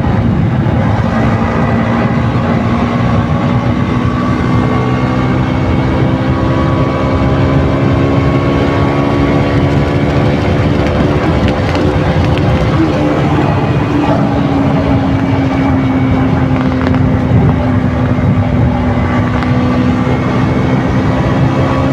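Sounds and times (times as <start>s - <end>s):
motorcycle engine at steady speed: 0.0s - 21.9s.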